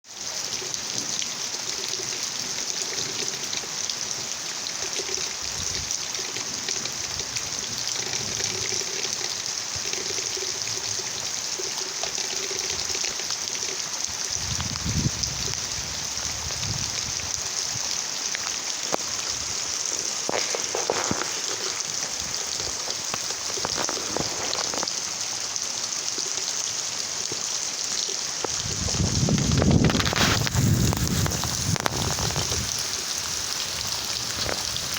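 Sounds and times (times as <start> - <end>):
steady rain falling: 0.0 - 34.9
thunder rumble: 28.6 - 32.8.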